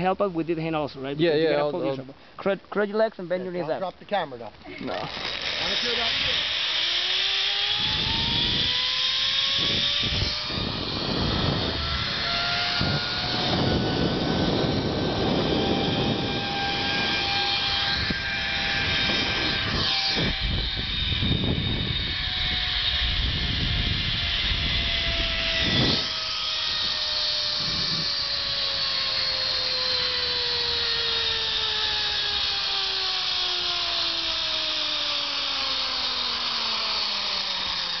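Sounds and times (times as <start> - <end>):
zipline pulleys whining on cable: 4.2 - 38.0
wind on microphone: 7.6 - 31.4.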